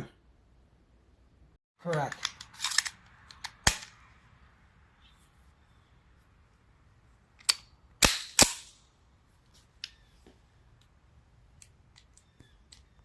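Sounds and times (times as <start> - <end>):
pistol shots: 8.0 - 8.8.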